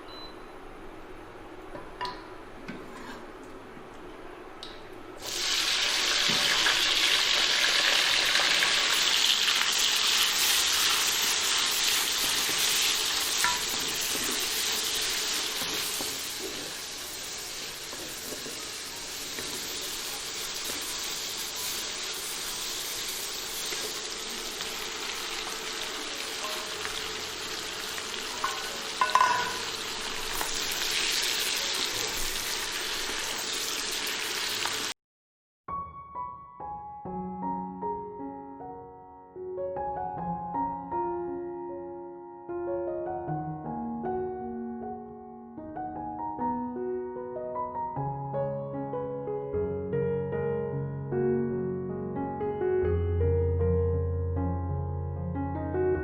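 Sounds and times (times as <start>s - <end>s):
food sizzling in oil: 5.2s - 35.0s.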